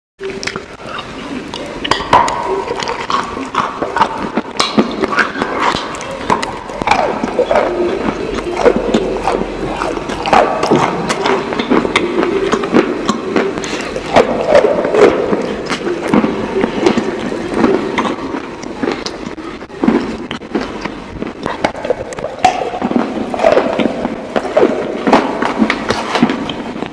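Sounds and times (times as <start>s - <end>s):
biting and chewing chicken wings: 2.1s - 19.2s.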